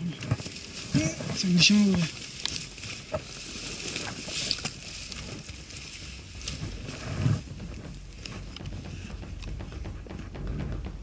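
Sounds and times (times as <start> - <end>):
small clicks and rustles: 0.0 - 9.9
wind rumbling on microphone: 0.0 - 11.0
dull low thump: 4.7 - 11.0.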